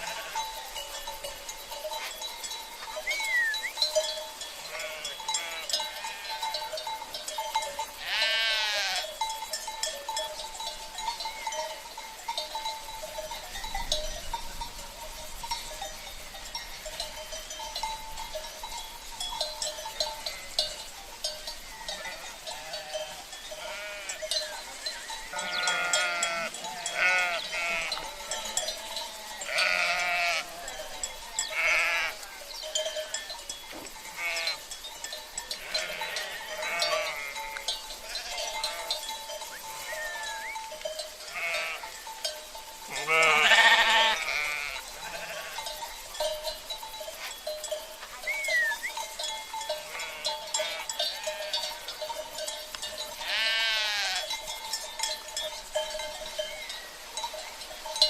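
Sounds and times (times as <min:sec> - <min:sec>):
sheep bleating: 0:00.0 - 0:00.5, 0:04.6 - 0:06.5, 0:08.0 - 0:09.1, 0:21.9 - 0:24.3, 0:25.3 - 0:32.2, 0:34.1 - 0:34.6, 0:35.6 - 0:39.0, 0:41.2 - 0:41.9, 0:42.9 - 0:45.6, 0:49.8 - 0:51.7, 0:53.2 - 0:54.3
livestock bells clinking: 0:00.0 - 0:58.0.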